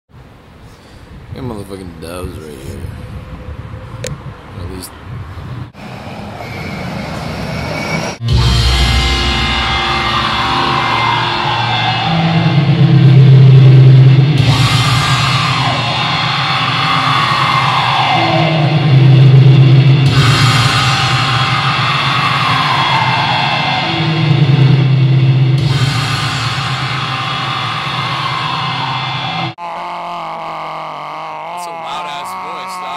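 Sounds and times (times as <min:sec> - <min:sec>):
low distorted chord: 0:08.2 - 0:29.2
heavy metal band playing live: 0:08.2 - 0:29.6.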